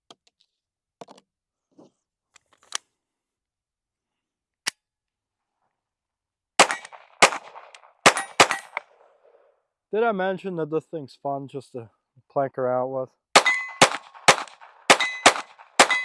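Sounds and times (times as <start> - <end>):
pistol shots with echo: 6.6 - 8.9, 13.4 - 16.0.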